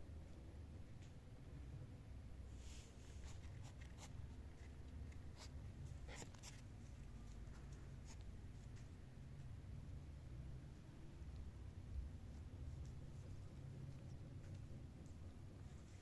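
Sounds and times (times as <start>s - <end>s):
steady low hum: 0.0s - 16.0s
faint scratching and clicks: 2.8s - 9.6s, 10.6s - 16.0s.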